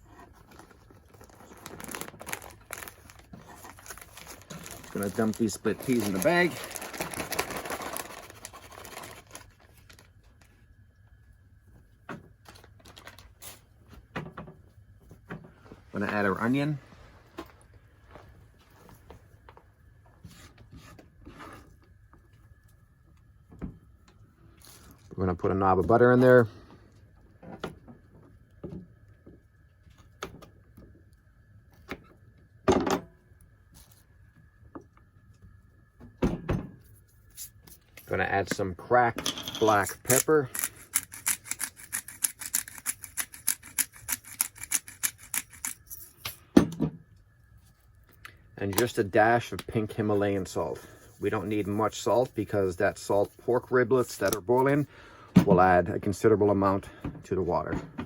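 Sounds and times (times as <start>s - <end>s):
peas pouring into cloth bag: 1.1s - 9.9s.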